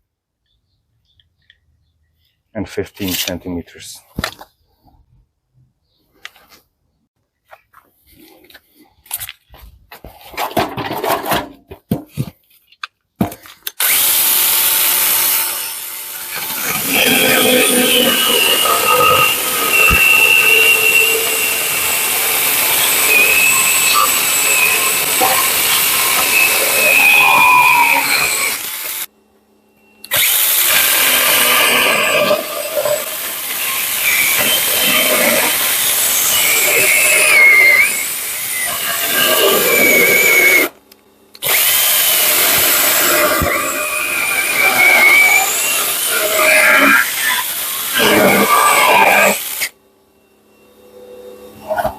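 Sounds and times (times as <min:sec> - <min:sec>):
mini chainsaw whining: 0:13.7 - 0:29.1, 0:30.0 - 0:40.8, 0:41.4 - 0:49.8.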